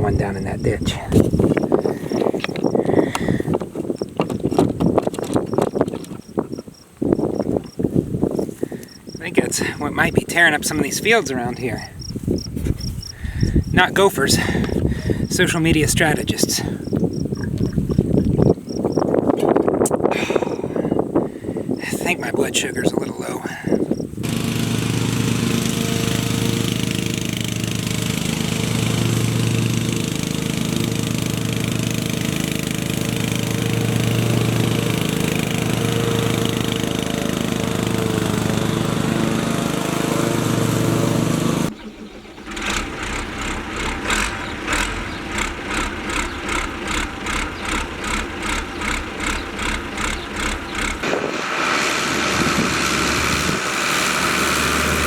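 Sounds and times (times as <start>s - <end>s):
engine running steadily: 0.0s - 6.2s, 8.4s - 18.4s, 23.5s - 55.0s
rhythmic pulsing engine: 24.0s - 52.1s.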